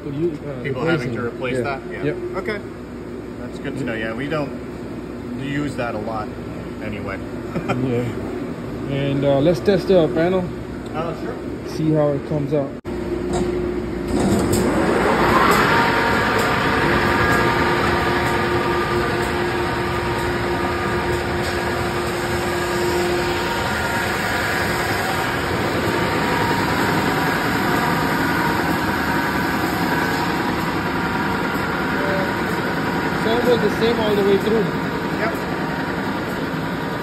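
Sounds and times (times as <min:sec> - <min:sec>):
belt sander motor running: 0:14.7 - 0:36.9.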